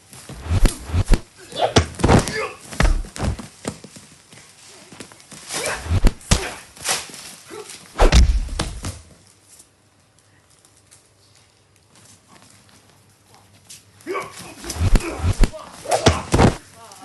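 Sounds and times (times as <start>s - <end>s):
fight hits thumps and swishes: 0.3s - 3.5s, 5.6s - 6.6s, 8.0s - 9.0s, 14.6s - 16.6s.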